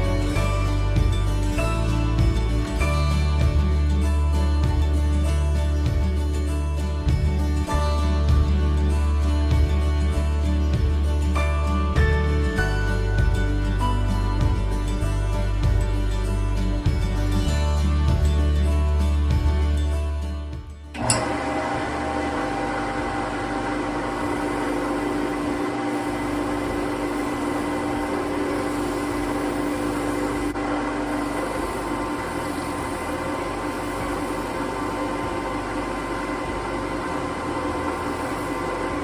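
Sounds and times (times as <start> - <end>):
low humming tone: 21.0 - 39.0
wood lathe motor hum: 21.0 - 39.0.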